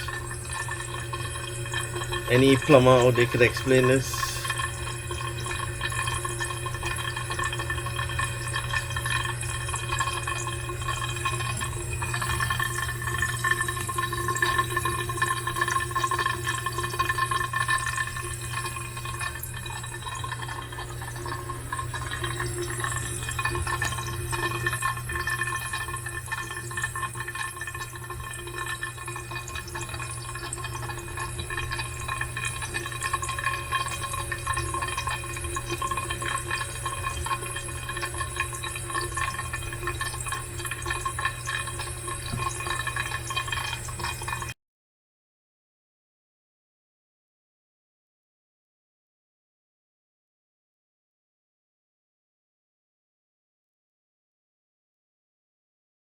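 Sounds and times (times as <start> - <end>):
pipe humming held tones: 0.0 - 44.5
water rushing through pipe: 0.0 - 44.6.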